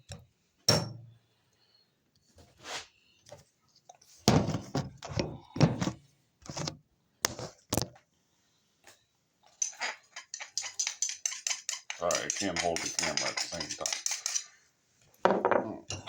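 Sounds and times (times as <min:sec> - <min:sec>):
cutlery clinking against dish: 0:09.5 - 0:14.6
kitchen things knocking: 0:09.6 - 0:14.5, 0:15.2 - 0:16.0.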